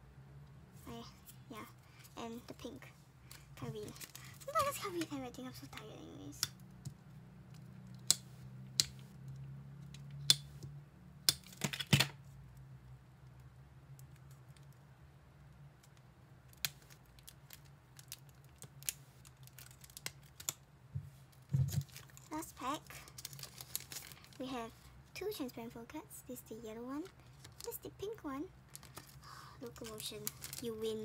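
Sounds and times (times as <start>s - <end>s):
low steady hum: 0.0s - 31.0s
paper and plastic handling: 2.0s - 5.9s, 16.8s - 24.6s, 28.7s - 31.0s.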